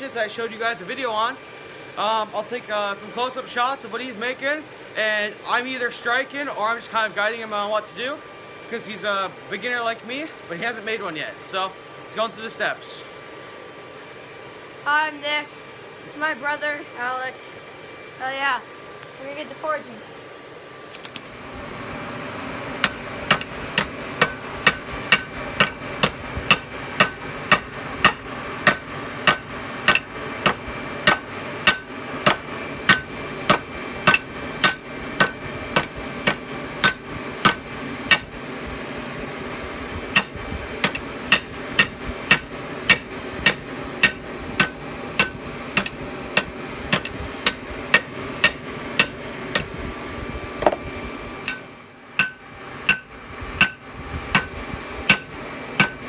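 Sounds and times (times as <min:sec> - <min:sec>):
background hum: 0:00.0 - 0:56.0
hammer striking steel on anvil: 0:22.8 - 0:38.3, 0:40.2 - 0:49.7, 0:51.4 - 0:53.8, 0:54.4 - 0:56.0.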